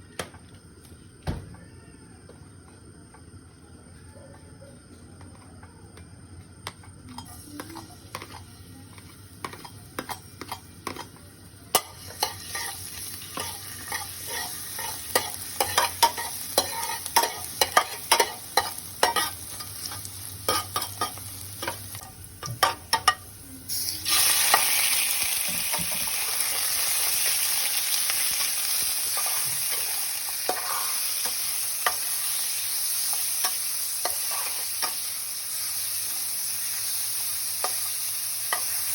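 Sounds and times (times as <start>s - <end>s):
food sizzling in a pan: 7.1s - 38.9s
spatula scraping a pan: 11.7s - 21.2s, 29.1s - 32.4s, 33.1s - 35.0s.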